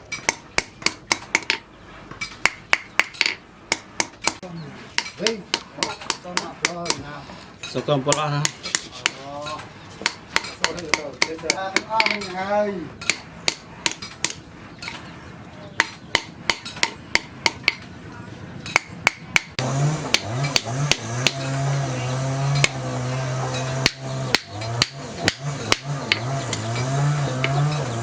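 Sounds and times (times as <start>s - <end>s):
hammer striking steel on anvil: 5.0s - 12.4s, 13.0s - 15.0s, 15.8s - 17.8s, 18.7s - 28.0s.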